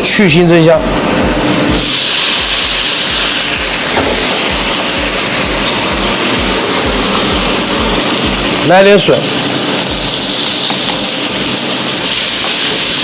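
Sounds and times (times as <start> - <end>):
wine sizzling in hot wok: 0.0 - 13.0
rapid low pulsing: 4.5 - 8.6.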